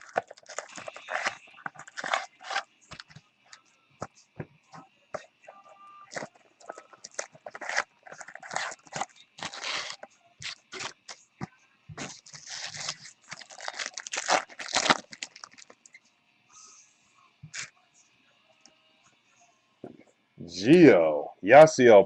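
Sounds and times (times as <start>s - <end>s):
packaging crinkling and tearing: 0.0s - 3.1s, 6.1s - 11.2s, 12.0s - 15.9s
cards rustling: 0.0s - 3.2s, 6.1s - 11.2s, 12.0s - 15.8s.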